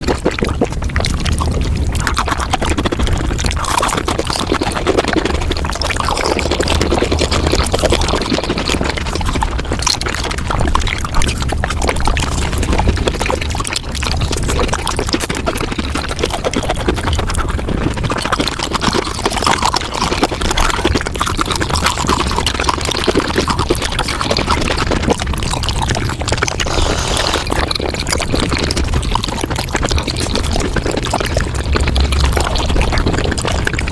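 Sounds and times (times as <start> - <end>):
fast chewing and crunching: 0.0 - 33.9.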